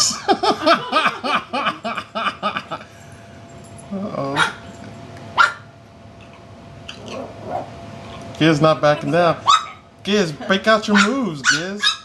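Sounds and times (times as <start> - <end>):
dog barking: 4.4 - 4.6, 5.4 - 5.7, 9.4 - 9.8, 10.9 - 12.0.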